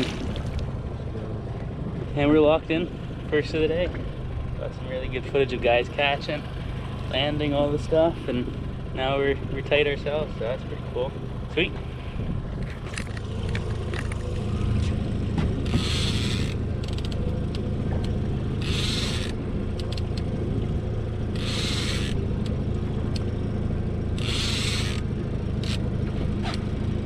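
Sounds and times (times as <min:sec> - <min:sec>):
boat motor running: 0:00.0 - 0:27.0
fishing reel cranking: 0:15.6 - 0:17.2, 0:18.6 - 0:20.2, 0:21.3 - 0:22.2, 0:24.2 - 0:25.8.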